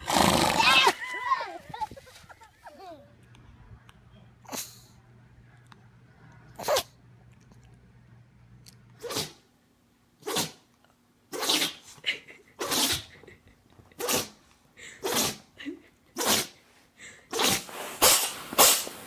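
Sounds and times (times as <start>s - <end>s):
pet sneezing: 4.5s - 4.9s, 6.6s - 7.0s, 9.0s - 9.5s, 10.2s - 10.7s, 11.3s - 13.2s, 13.9s - 16.6s, 17.3s - 19.0s.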